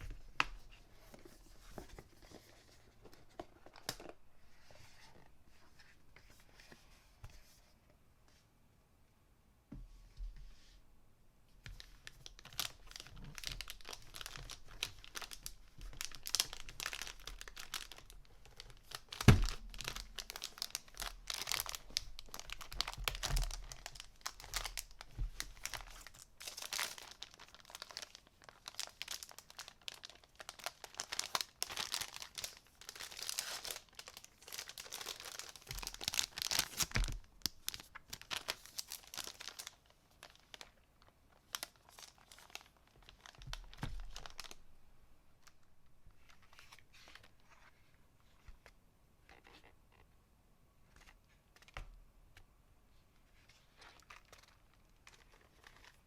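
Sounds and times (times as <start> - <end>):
packaging crinkling and tearing: 11.8 - 44.6, 53.7 - 56.0.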